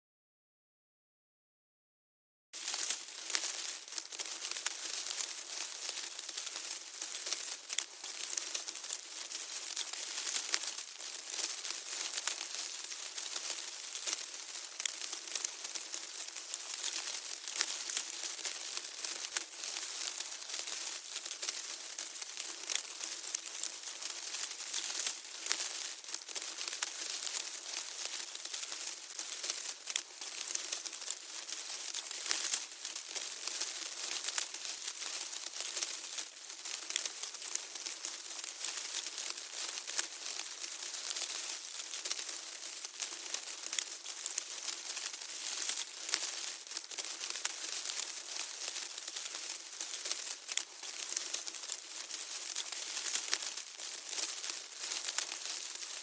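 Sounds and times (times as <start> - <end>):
ant colony crackling: 2.6 - 56.0.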